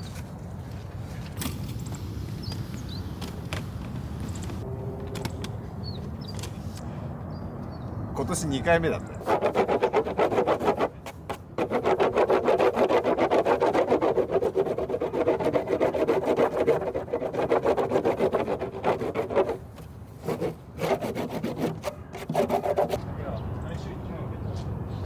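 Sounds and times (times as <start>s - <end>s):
rubbing strokes on hard surface: 9.2s - 23.0s.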